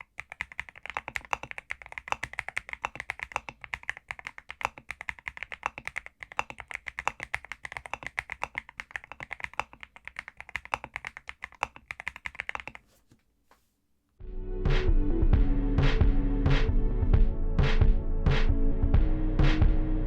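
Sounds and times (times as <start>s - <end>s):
rapid typing on mechanical keyboard: 0.0s - 12.8s.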